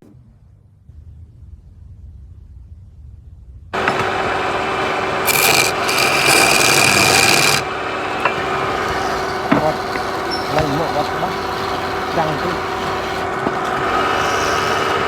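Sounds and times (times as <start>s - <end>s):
tool scraping wood on lathe: 3.8s - 15.0s.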